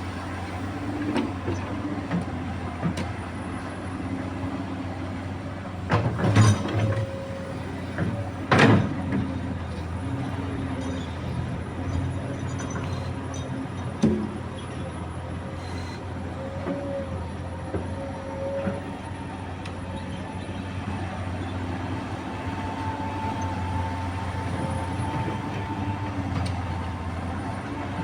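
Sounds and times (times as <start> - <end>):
excavator diesel engine running: 0.0 - 28.0.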